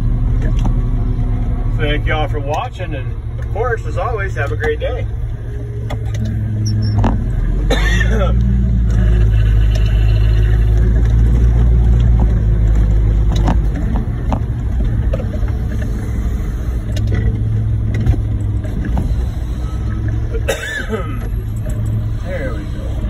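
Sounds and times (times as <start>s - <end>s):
diesel engine droning: 0.0s - 23.0s.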